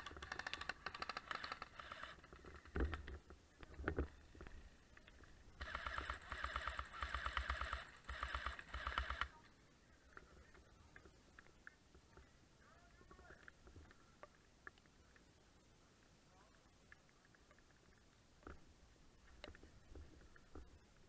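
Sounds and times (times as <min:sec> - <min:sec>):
airsoft gun firing bursts: 0:00.0 - 0:02.8, 0:05.6 - 0:09.3.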